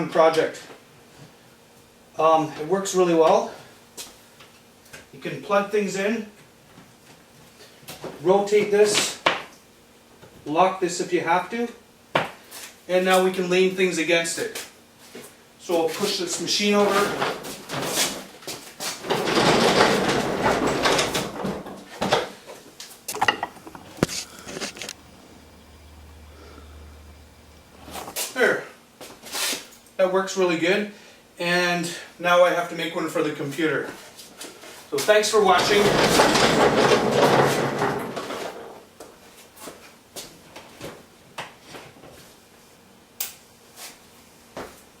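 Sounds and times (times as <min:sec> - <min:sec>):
machine scraping across floor: 0:16.8 - 0:22.0, 0:23.2 - 0:25.5, 0:35.4 - 0:38.8
machine knocking into place: 0:23.1 - 0:25.0.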